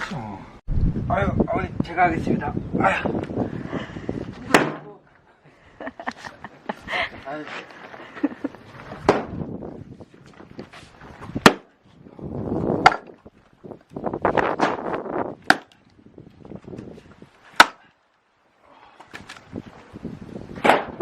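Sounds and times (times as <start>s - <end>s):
axe splitting wood: 4.5s - 4.9s, 9.0s - 9.4s, 11.3s - 11.7s, 12.8s - 13.2s, 14.5s - 15.8s, 17.5s - 17.9s, 20.6s - 21.0s.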